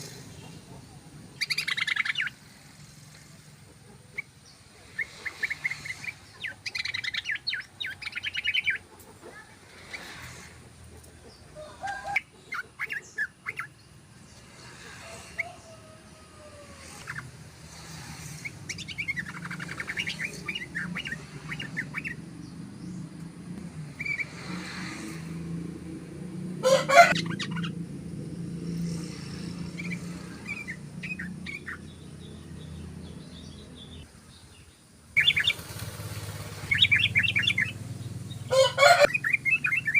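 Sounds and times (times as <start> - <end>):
bird chattering song: 0.0 - 2.6, 3.8 - 14.0, 16.8 - 23.1, 26.9 - 27.8, 28.9 - 35.7, 36.7 - 39.9.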